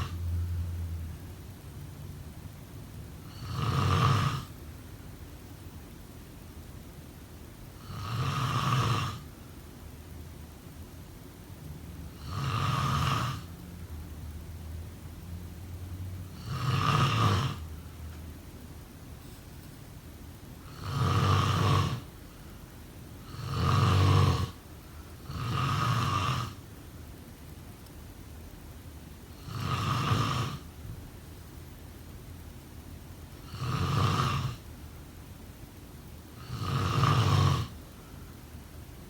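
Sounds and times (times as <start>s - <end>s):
person snoring: 0.0s - 0.2s, 3.2s - 4.5s, 7.8s - 9.3s, 12.2s - 13.5s, 16.3s - 17.7s, 20.6s - 22.1s, 23.2s - 24.6s, 25.2s - 26.6s, 29.4s - 30.7s, 33.4s - 34.6s, 36.4s - 37.8s.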